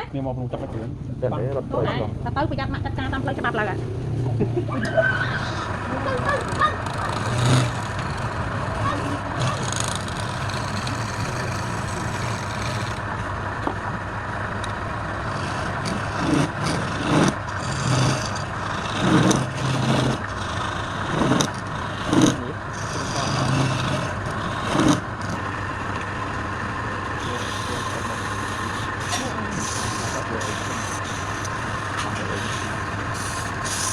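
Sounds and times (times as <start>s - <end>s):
motor humming: 2.3s - 33.9s.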